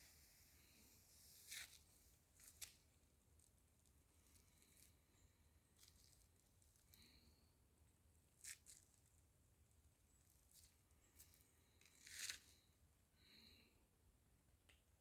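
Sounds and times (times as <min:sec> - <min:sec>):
faint crackles and ticks: 0:08.4 - 0:09.2.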